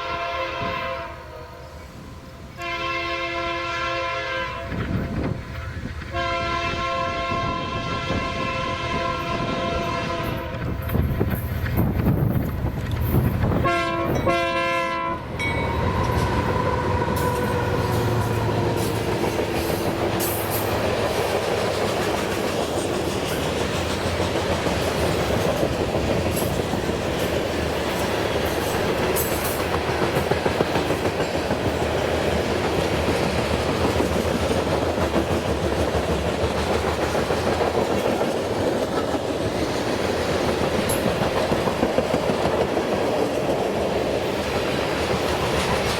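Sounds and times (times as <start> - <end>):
locomotive air horn blasts: 0.0 - 1.6, 2.5 - 4.8, 6.1 - 10.6, 13.6 - 20.6
freight cars rumbling on rails: 4.6 - 45.9.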